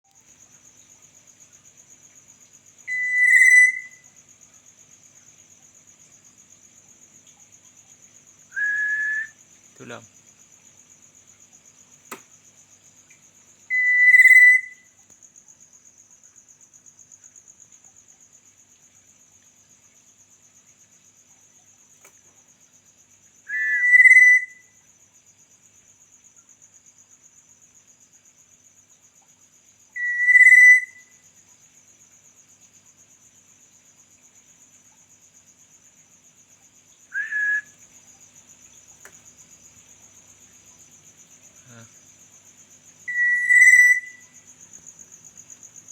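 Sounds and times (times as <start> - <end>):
cricket trilling: 0.0 - 45.9
bird whistled calls: 2.9 - 4.0, 8.6 - 9.4, 13.7 - 14.8, 23.5 - 24.6, 30.0 - 31.0, 37.2 - 37.7, 43.1 - 44.2.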